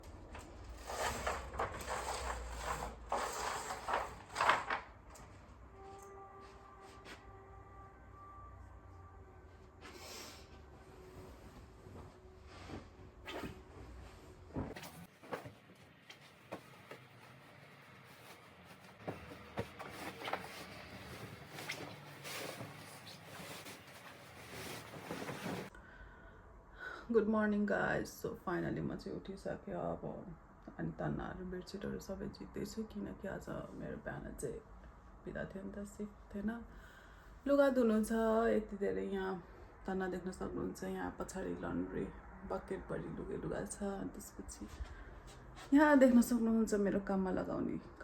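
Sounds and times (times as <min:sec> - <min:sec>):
rustling and scraping: 0:00.0 - 0:05.6, 0:09.8 - 0:25.7
soft music: 0:05.4 - 0:14.5.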